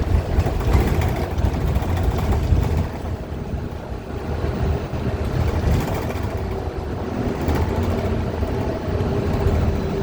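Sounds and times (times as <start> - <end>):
bus engine cabin rumble: 0.0 - 10.0.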